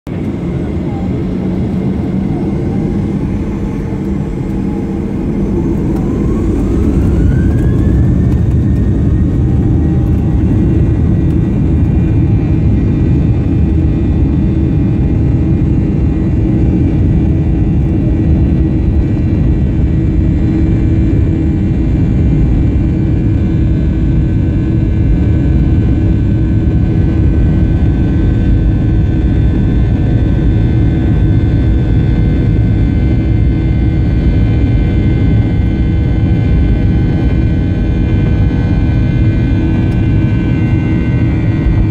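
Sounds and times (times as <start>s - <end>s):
jet engines spooling up: 0.2s - 14.4s.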